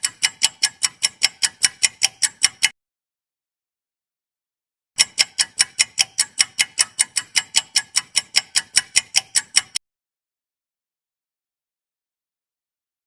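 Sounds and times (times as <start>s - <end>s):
clock-like ticking: 0.0s - 2.8s, 5.0s - 9.8s.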